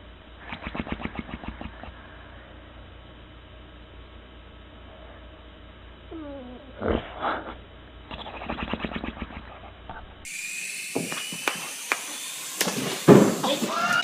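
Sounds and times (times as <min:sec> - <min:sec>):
dog whining: 0:06.1 - 0:09.6
dog growling: 0:06.1 - 0:10.0.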